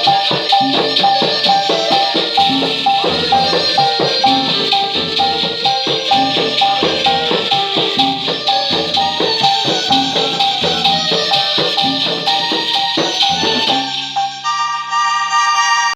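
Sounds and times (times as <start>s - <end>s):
shaker and drum rhythm: 0.0s - 14.5s
electronic keyboard dance tune: 0.0s - 15.9s.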